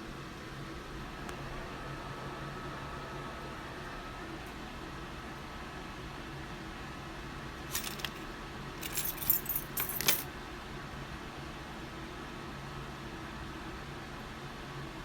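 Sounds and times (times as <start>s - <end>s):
small metal objects jingling: 7.7s - 10.3s.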